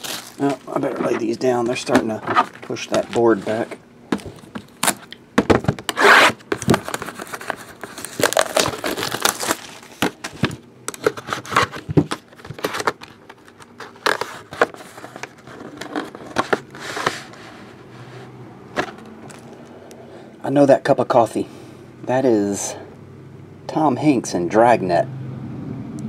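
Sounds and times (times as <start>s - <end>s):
paper and plastic crinkling: 0.0s - 5.2s, 6.4s - 17.8s, 18.8s - 19.7s.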